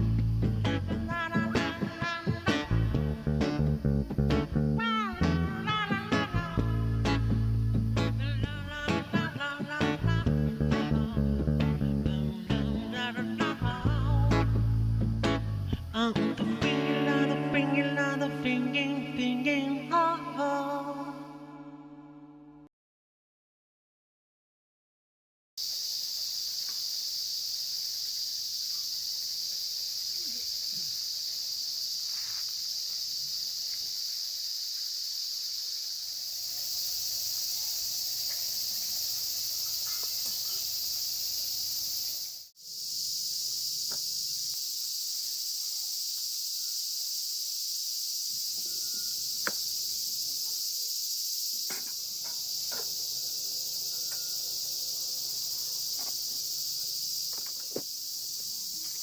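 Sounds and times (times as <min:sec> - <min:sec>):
crickets and insects chorus: 0:11.8 - 0:15.2, 0:25.6 - 0:59.0.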